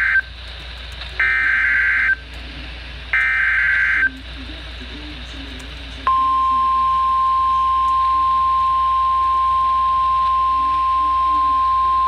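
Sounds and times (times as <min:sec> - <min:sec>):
steady warning alarm tone: 0:00.0 - 0:00.3, 0:01.2 - 0:02.2, 0:03.1 - 0:04.2, 0:06.0 - 0:12.0.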